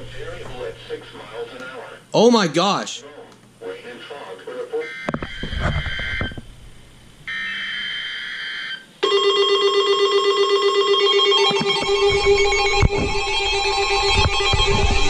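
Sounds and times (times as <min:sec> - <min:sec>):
loud steady attention tone: 0:00.0 - 0:10.0, 0:10.6 - 0:15.0.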